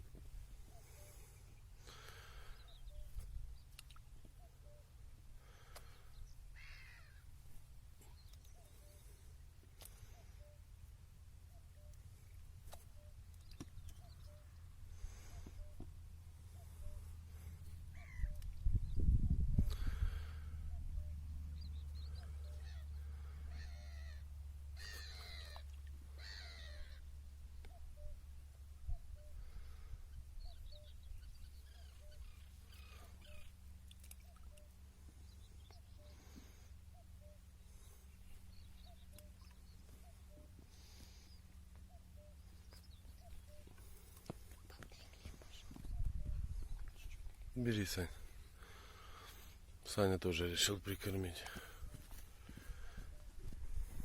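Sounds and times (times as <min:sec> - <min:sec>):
low outdoor background: 0:00.0 - 0:54.0
distant crow cawing: 0:06.5 - 0:07.3, 0:17.9 - 0:18.4, 0:22.1 - 0:27.2
harsh drawn-out animal call: 0:22.1 - 0:27.1
faint high chirps: 0:30.4 - 0:47.3
steady low rumble: 0:34.7 - 0:49.9.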